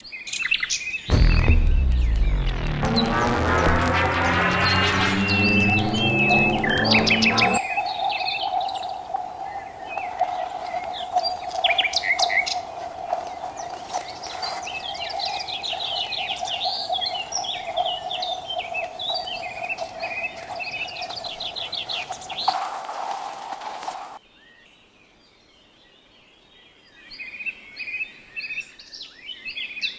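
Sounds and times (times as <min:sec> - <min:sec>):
steady low hum: 0:01.1 - 0:07.6.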